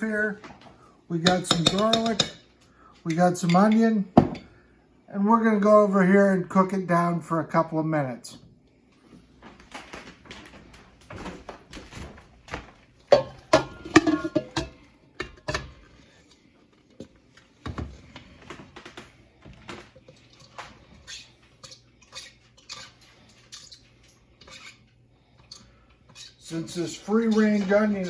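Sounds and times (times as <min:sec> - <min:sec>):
metal utensil clinking on pan: 0:01.3 - 0:02.4, 0:13.1 - 0:15.7
low steady hum: 0:10.5 - 0:28.0
food scraped into pan: 0:20.0 - 0:28.0.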